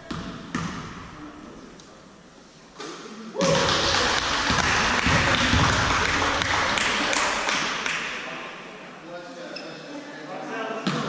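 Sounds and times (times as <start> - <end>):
basketball bouncing on wooden floor: 0.0 - 1.0
loud steady noise: 3.4 - 8.8.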